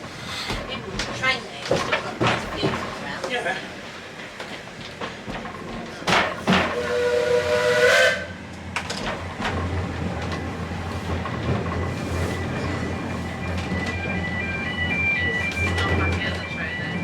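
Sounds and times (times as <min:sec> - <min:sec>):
steam locomotive whistle: 0:06.7 - 0:08.4.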